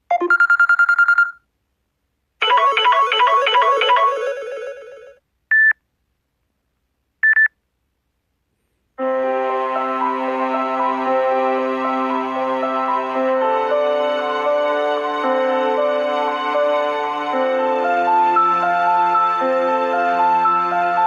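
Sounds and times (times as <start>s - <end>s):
sustained synthesized chord: 9.0s - 21.0s.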